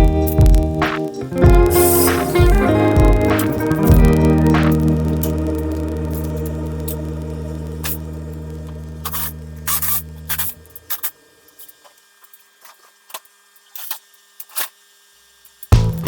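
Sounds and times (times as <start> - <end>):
background music with low drone: 0.0 - 10.6
short sharp hisses: 1.7 - 2.4.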